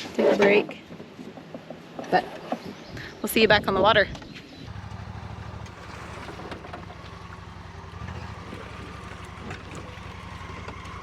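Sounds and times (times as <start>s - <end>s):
outboard motor running: 4.7s - 11.0s.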